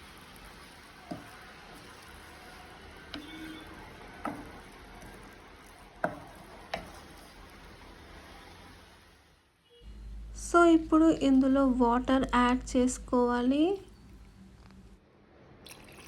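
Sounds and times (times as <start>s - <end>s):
faint sizzle: 0.0s - 15.0s
spoon knocking against pan: 1.1s - 1.4s, 4.2s - 5.2s, 6.0s - 7.0s.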